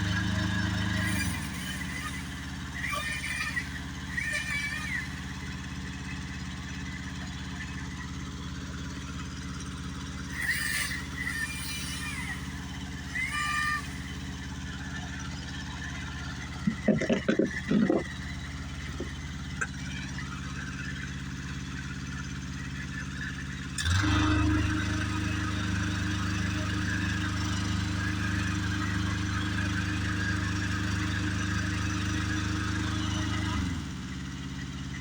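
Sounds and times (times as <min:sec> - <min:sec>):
engine running steadily: 0:00.0 - 0:35.0.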